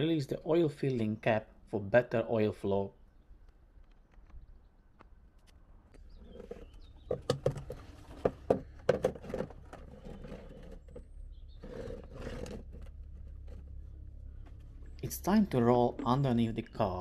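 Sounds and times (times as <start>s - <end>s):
sharp clicks and knocks: 3.4s - 13.8s
low steady hum: 4.7s - 17.0s
scraping or rustling: 6.2s - 15.0s.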